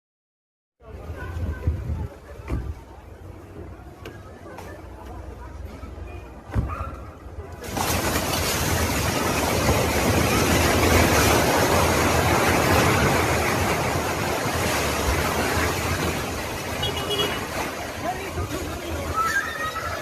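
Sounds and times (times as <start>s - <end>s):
rushing rumble of falling debris: 7.5s - 20.0s.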